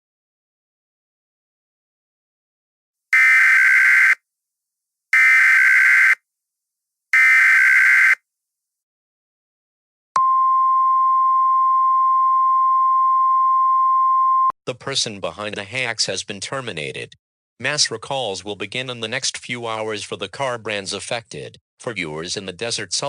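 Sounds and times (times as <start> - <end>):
screechy data tones: 3.2 - 4.2, 5.2 - 6.2, 7.2 - 8.2.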